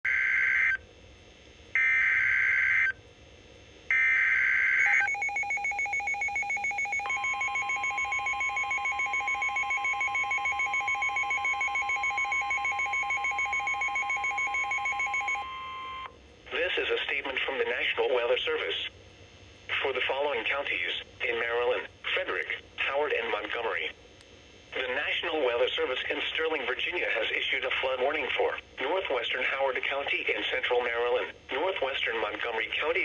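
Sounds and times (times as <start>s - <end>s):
digital data tone bursts: 4.8s - 16.1s
rapidly pulsing beep: 4.8s - 16.1s.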